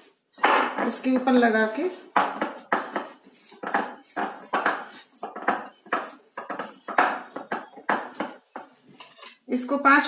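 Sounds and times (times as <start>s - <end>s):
hands slapping dough: 0.0s - 8.9s.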